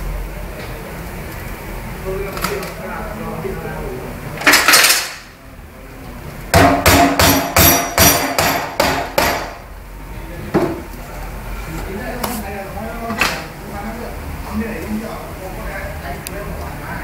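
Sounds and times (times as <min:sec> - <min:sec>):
hammer ringing on metal: 0:06.5 - 0:09.6.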